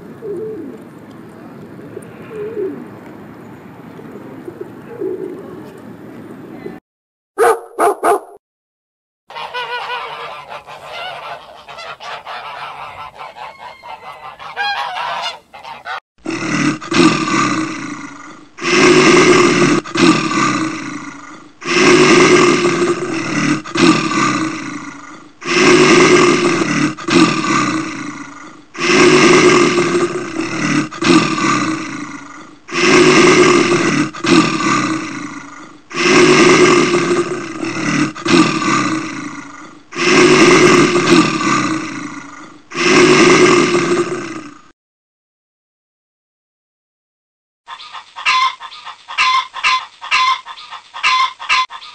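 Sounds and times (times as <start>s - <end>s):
animal loud cries: 9.3s - 16.0s
quieter animal sound: 9.3s - 16.0s.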